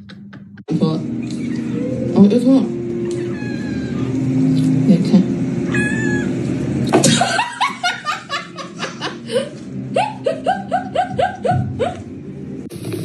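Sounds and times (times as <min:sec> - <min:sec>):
person laughing hard: 0:07.0 - 0:12.0.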